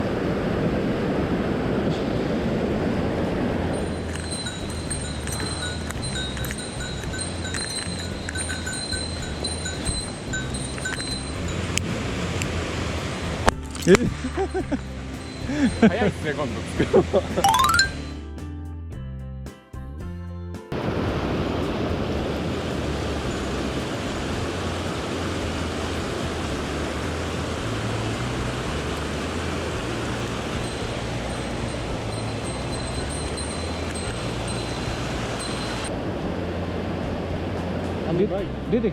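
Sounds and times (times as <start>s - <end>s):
stream water rushing: 2.8s - 14.3s, 20.8s - 35.9s
music with chimes and pulsing bass: 3.8s - 12.6s, 13.6s - 18.6s, 25.5s - 35.9s.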